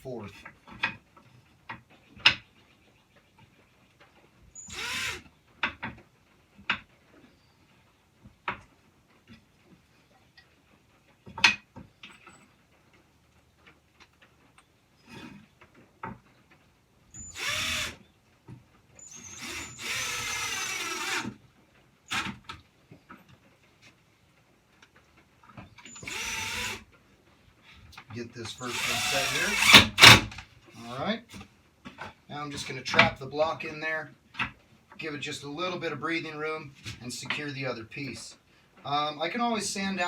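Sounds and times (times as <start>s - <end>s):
power drill driving screws: 4.6s - 5.3s, 17.1s - 18.0s, 19.0s - 21.4s, 22.1s - 22.4s, 25.9s - 26.9s, 28.5s - 30.4s.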